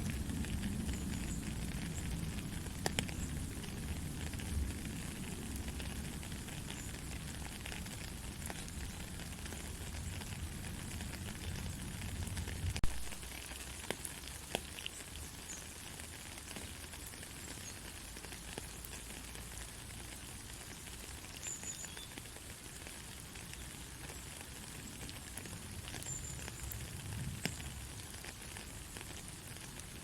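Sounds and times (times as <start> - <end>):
raindrops ticking: 0.0 - 30.0
soft rain hissing: 0.0 - 30.0.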